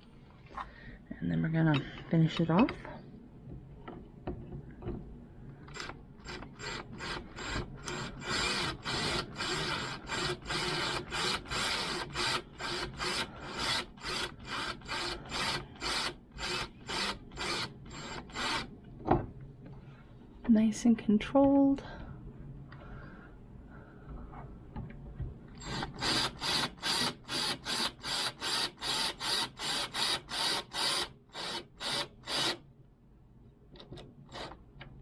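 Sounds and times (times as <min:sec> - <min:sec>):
screwdriver tightening bolts rasp: 0:05.7 - 0:18.7, 0:25.6 - 0:32.6.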